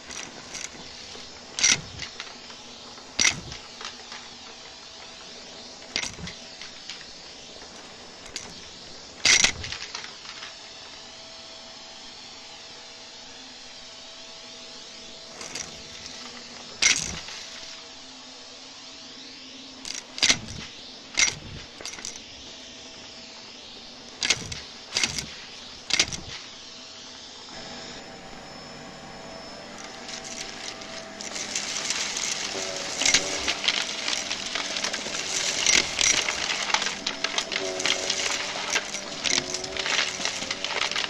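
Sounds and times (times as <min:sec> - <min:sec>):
debris clicking in vacuum: 0:00.0 - 0:10.8, 0:15.3 - 0:17.8, 0:19.8 - 0:22.3, 0:24.2 - 0:26.5, 0:29.6 - 0:41.0
vacuum cleaner running: 0:00.0 - 0:41.0.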